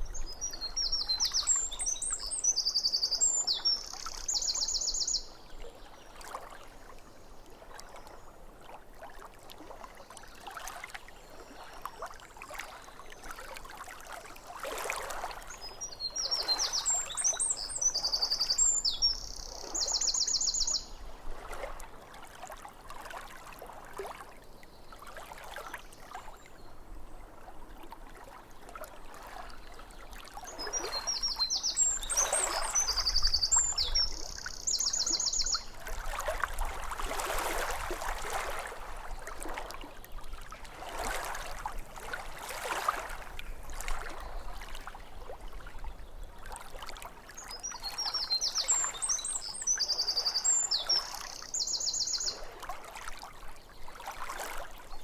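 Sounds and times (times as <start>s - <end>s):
songbird singing with trill: 0.0s - 5.4s, 15.6s - 21.0s, 30.5s - 35.8s, 47.4s - 52.4s
small waves lapping: 0.0s - 55.0s.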